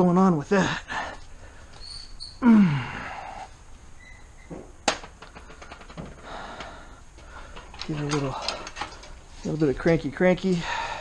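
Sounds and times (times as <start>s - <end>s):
man sighing: 2.4s - 3.6s.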